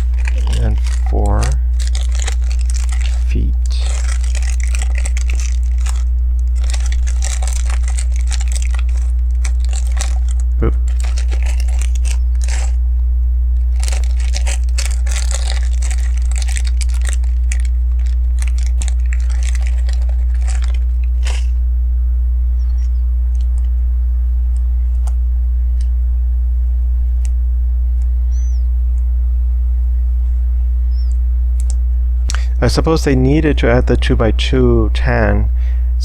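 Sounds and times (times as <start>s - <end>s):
plastic bricks clattering: 0.0s - 12.8s, 13.7s - 21.4s
low electrical hum: 0.0s - 36.0s.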